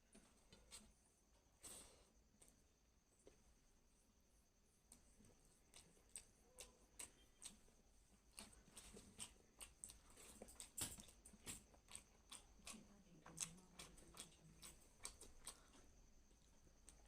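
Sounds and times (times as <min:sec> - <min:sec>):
person chewing food: 0:04.8 - 0:17.0.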